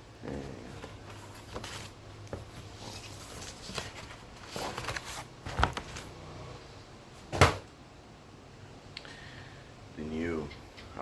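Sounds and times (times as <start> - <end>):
package rustling: 2.8 - 6.1
package thud: 7.3 - 7.7.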